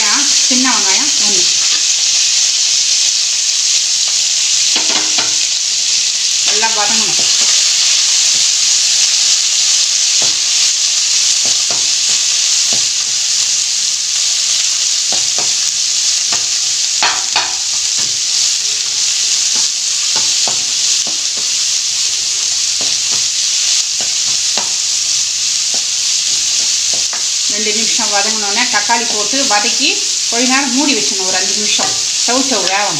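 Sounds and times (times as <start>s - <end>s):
vegetables sizzling in oil: 0.0s - 32.9s
spatula scraping a pan: 6.2s - 29.6s.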